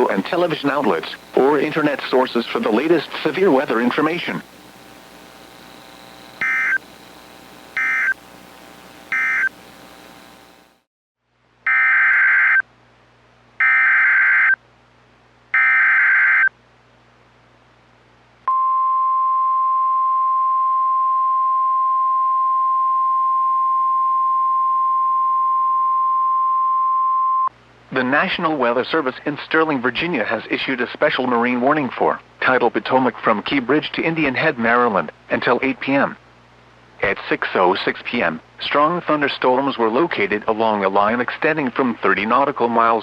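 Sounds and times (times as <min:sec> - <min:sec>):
steady warning alarm tone: 0:00.0 - 0:10.7
buzzing digital data bursts: 0:00.0 - 0:10.8.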